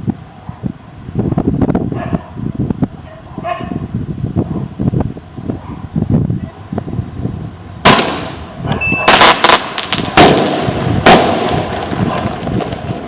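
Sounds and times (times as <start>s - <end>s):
firework rocket bangs: 7.8s - 13.0s.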